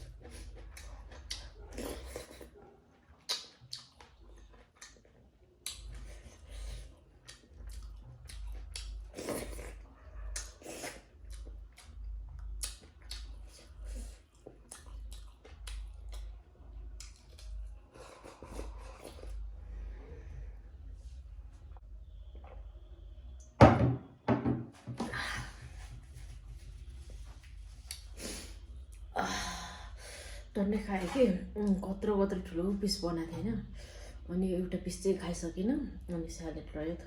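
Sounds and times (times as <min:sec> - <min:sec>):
chewing with wet mouth clicks: 0:00.0 - 0:19.5, 0:27.4 - 0:29.1.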